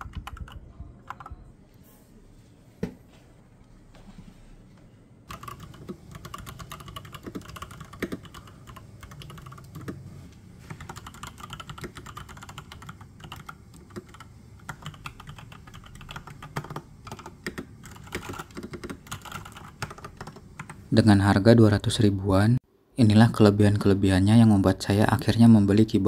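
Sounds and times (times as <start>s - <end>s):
mechanical keyboard typing: 0.0s - 1.4s, 5.3s - 10.0s, 10.7s - 20.8s.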